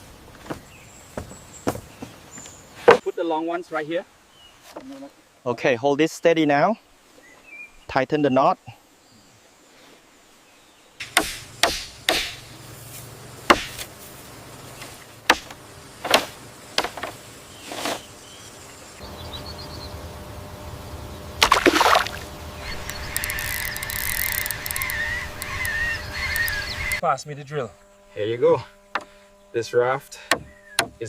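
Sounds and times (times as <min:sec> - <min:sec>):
sharp knocks: 0:11.0 - 0:12.5, 0:13.5 - 0:13.9, 0:15.3 - 0:17.2, 0:30.3 - 0:31.0
water: 0:21.4 - 0:24.5.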